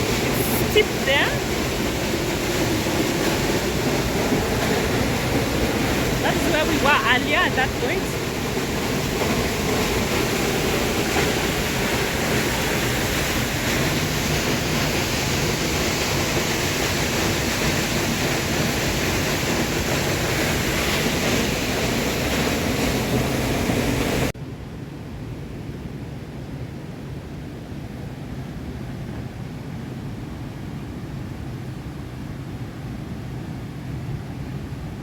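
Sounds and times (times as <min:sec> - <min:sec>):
waterfall pouring onto rocks: 0:00.0 - 0:24.3.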